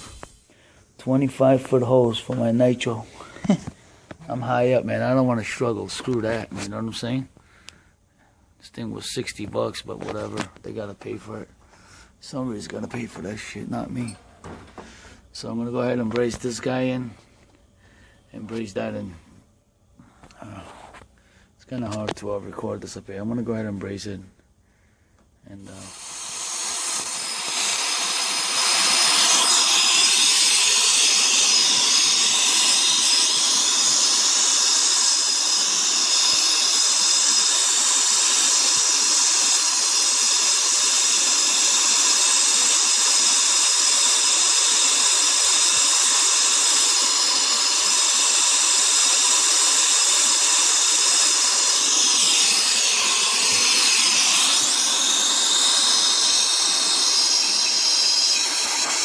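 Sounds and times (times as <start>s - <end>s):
torch flame hissing: 0.0s - 7.0s, 25.5s - 59.0s.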